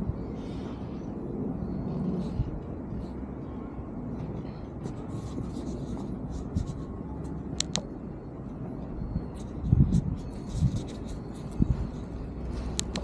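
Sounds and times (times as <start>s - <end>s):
road traffic rumble: 0.0s - 13.0s
sharp clicks: 7.6s - 7.9s.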